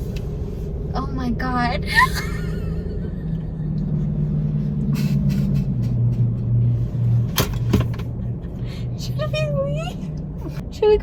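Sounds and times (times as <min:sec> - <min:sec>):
car engine humming: 0:00.0 - 0:11.0.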